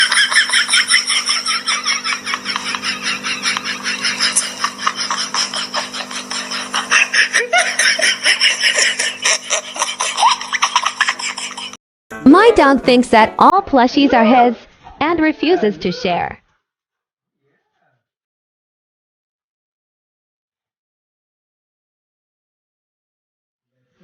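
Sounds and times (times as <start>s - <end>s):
high pulsing laughter: 0.0s - 11.8s.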